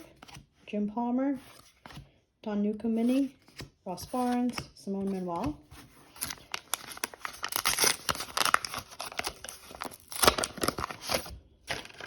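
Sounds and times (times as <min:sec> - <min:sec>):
cards being handled: 0:03.1 - 0:12.0
wrapper tearing and crinkling: 0:06.1 - 0:12.0.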